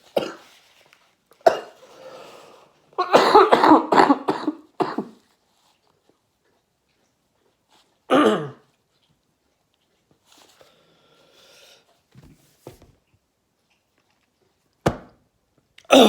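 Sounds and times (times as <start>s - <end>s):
man coughing: 3.0s - 5.1s.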